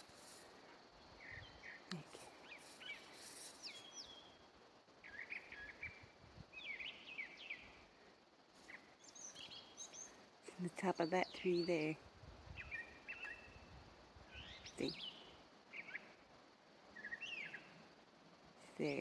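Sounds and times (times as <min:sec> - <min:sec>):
songbird chirping and whistling: 0:01.2 - 0:04.4, 0:05.0 - 0:07.7, 0:12.5 - 0:13.7, 0:14.3 - 0:16.1, 0:16.9 - 0:17.8.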